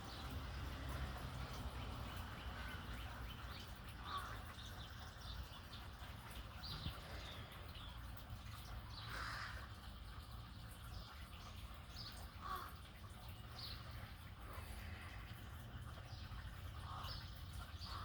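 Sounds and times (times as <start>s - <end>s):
crows whining calls: 9.0s - 9.7s.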